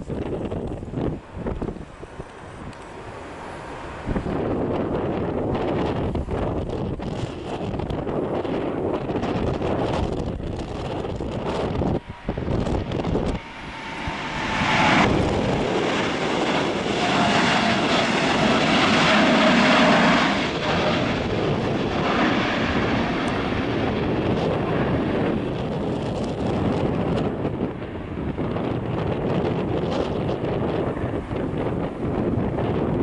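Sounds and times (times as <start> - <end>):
jet engine roar: 0.0 - 33.0
wind buffeting microphone: 0.0 - 33.0
jet whine falling in pitch: 7.2 - 30.4.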